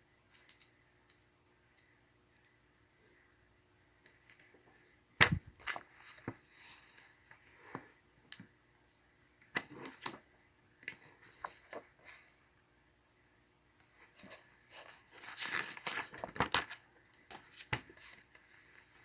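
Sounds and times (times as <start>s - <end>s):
paper pages rustling: 5.2s - 7.2s, 10.8s - 12.3s, 14.0s - 19.0s.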